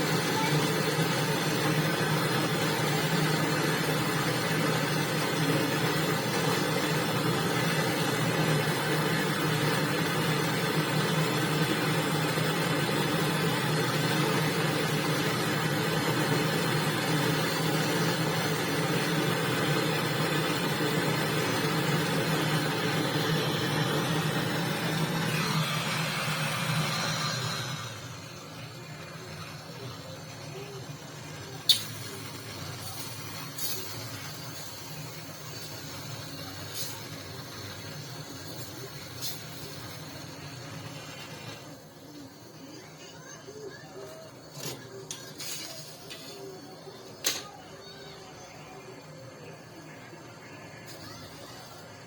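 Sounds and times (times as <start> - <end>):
machine motor humming and whirring: 0.0 - 52.0.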